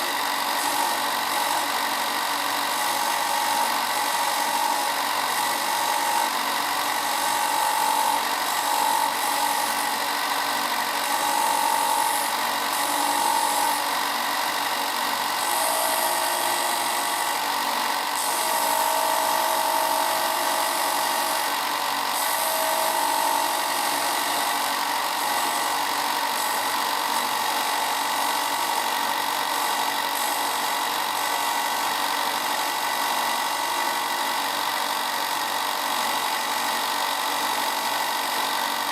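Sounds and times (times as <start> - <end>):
wood grinding against sanding disc: 0.0 - 14.5
disc sander running: 0.0 - 38.9.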